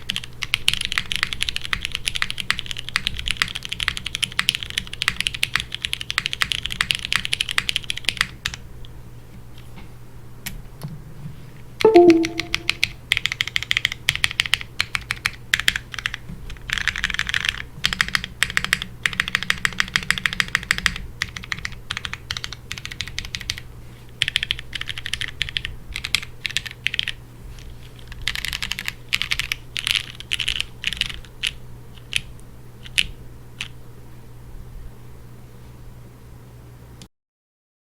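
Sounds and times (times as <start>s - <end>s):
typing on mechanical keyboard: 0.0s - 8.6s, 11.9s - 23.6s, 24.2s - 27.2s, 28.0s - 33.7s
loud falling tone: 11.9s - 12.8s.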